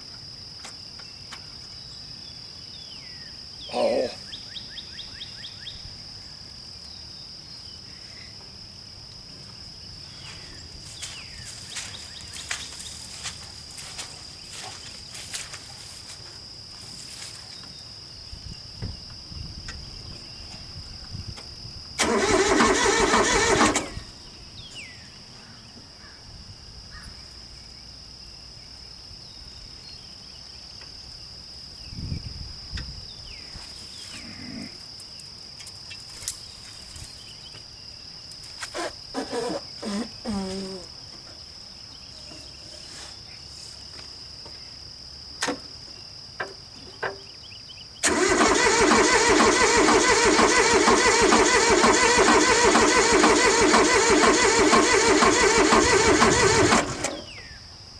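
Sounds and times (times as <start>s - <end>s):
starter motor cranking: 22.0s - 24.1s, 48.0s - 57.4s
high insect shrill: 38.6s - 41.0s.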